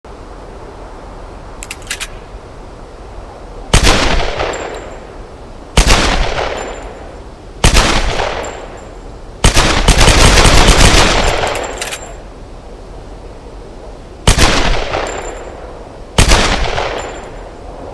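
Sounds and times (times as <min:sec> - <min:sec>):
pistol shots: 0:05.8 - 0:06.9, 0:14.3 - 0:15.4, 0:16.2 - 0:17.4.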